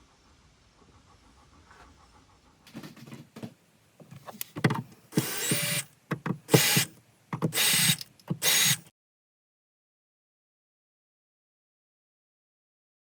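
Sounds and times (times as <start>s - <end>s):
power drill bursts: 5.1s - 5.9s, 6.5s - 8.9s.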